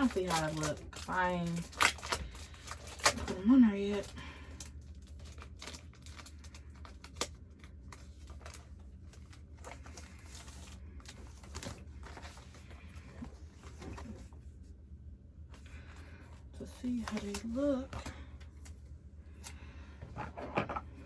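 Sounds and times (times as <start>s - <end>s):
plastic tubes rustling and clicking: 0.0s - 12.5s
low steady hum: 0.0s - 21.0s.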